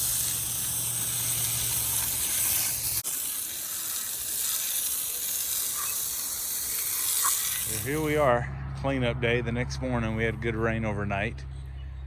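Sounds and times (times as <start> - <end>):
high-pitched outdoor hiss: 0.0 - 8.3.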